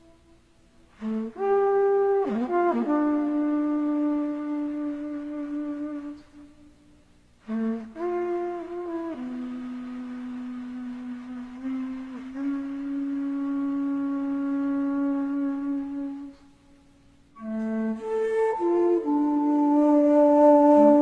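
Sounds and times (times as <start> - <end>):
slow solo melody: 17.4 - 21.0.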